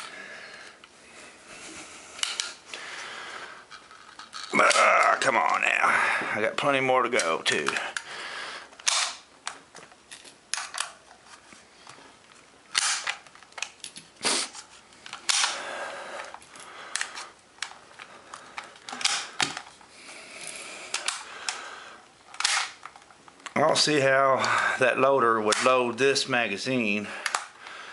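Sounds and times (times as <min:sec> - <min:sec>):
magazine rattling: 0:03.7 - 0:05.6, 0:08.7 - 0:23.6
cartridges clicking into magazine: 0:08.8 - 0:09.6, 0:12.7 - 0:14.0, 0:15.1 - 0:15.6, 0:22.3 - 0:22.9.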